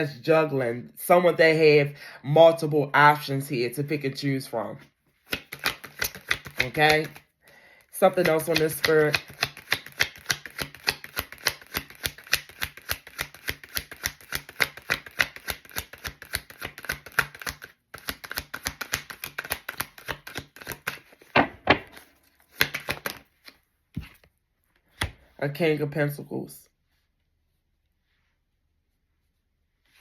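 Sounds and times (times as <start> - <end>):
cards being shuffled: 5.1 - 7.3, 7.9 - 25.3
cards rustling: 5.1 - 25.3.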